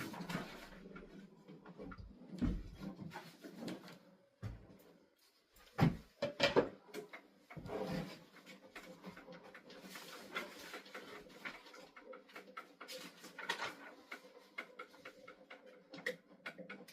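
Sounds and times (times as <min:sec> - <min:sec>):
wooden knocks and clunks: 0:00.0 - 0:04.8, 0:05.6 - 0:07.1.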